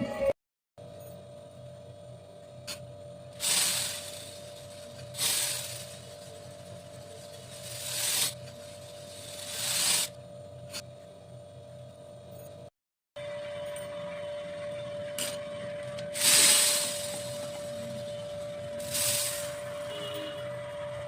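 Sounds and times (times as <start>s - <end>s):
small beads being poured: 3.4s - 4.4s, 5.1s - 6.1s, 7.4s - 8.4s, 9.0s - 10.1s, 16.2s - 17.9s, 18.8s - 19.6s.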